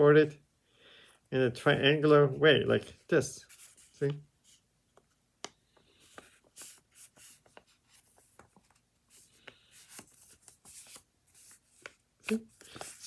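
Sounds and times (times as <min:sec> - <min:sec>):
paper being folded and creased: 0:06.1 - 0:13.0.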